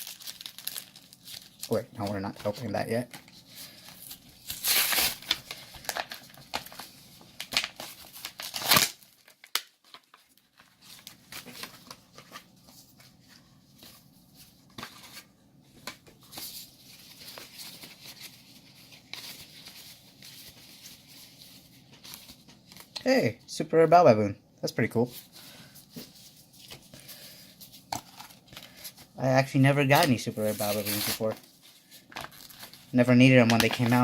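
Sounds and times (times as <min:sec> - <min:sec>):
foil wrapper tearing: 0:00.0 - 0:01.8, 0:03.6 - 0:12.0
foil wrapper crinkling: 0:00.0 - 0:13.2, 0:25.4 - 0:34.0.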